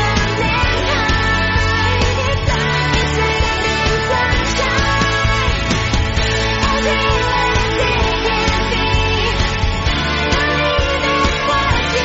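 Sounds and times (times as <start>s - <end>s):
upbeat pop song: 0.0s - 12.0s.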